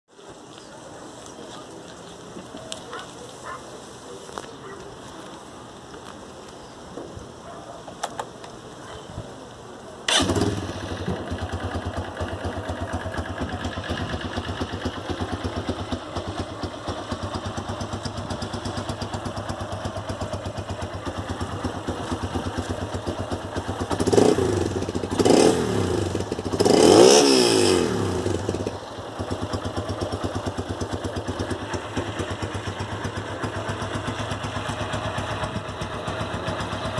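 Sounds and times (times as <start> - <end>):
motorcycle engine idling and revving: 10.1 - 36.9.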